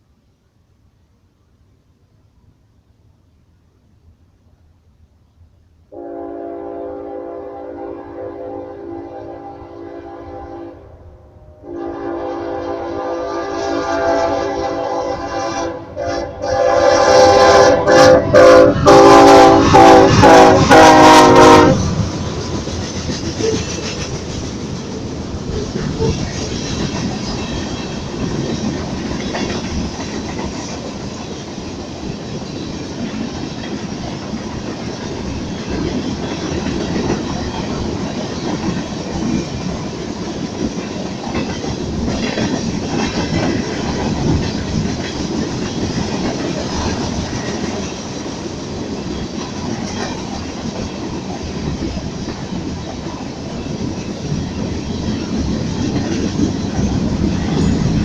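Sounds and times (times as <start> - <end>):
train wheels rumbling on rails: 11.5 - 58.0
clickety-clack over rail joints: 19.6 - 58.0.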